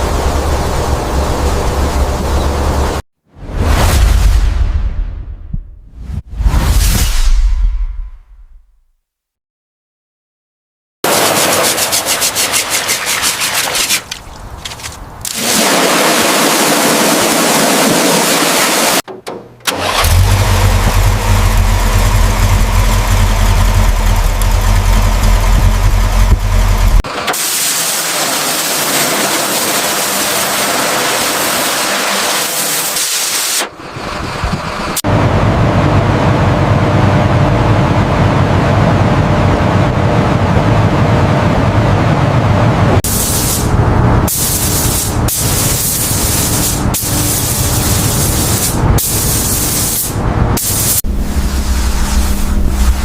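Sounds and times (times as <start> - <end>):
car engine turning over: 19.3 - 27.3, 33.7 - 37.4
car engine running: 19.7 - 27.0, 33.7 - 43.0, 50.4 - 53.0.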